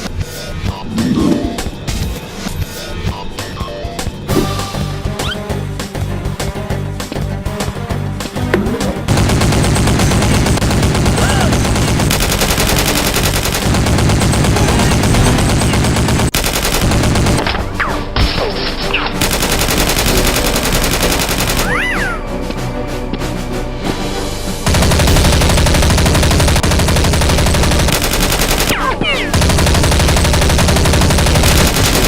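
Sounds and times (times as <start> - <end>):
music: 0.0 - 32.0
automatic gunfire bursts: 9.1 - 17.4, 19.2 - 21.8, 24.7 - 32.0.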